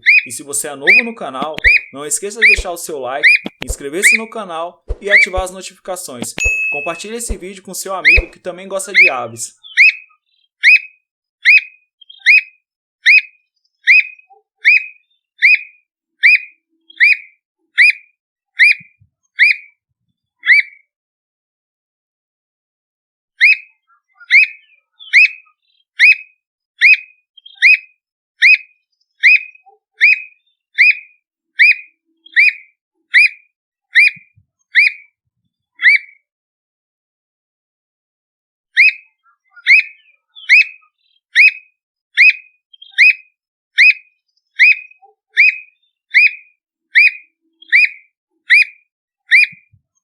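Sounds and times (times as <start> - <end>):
bird whistled notes: 0.0 - 0.3, 0.9 - 4.2, 9.7 - 12.4, 13.9 - 18.0, 23.4 - 25.4, 27.6 - 27.8, 28.4 - 31.0, 31.6 - 32.6, 38.8 - 39.0, 39.6 - 40.8, 41.4 - 41.6, 42.2 - 43.2, 43.8 - 44.0, 44.6 - 46.4, 47.0 - 49.6.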